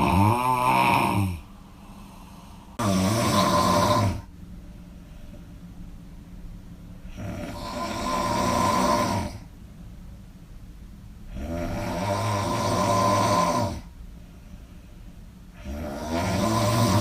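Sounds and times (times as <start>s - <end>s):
person snoring loudly: 0.0s - 4.3s, 7.1s - 9.5s, 11.3s - 13.9s, 15.6s - 17.0s.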